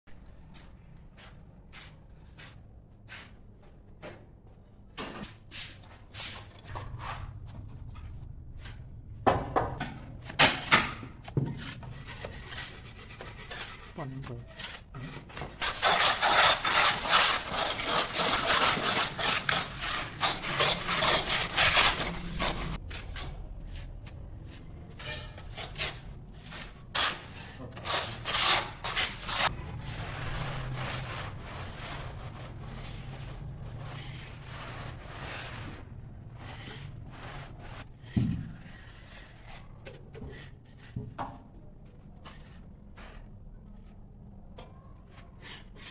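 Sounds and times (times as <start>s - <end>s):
plastering trowel scraping plaster: 11.4s - 41.0s.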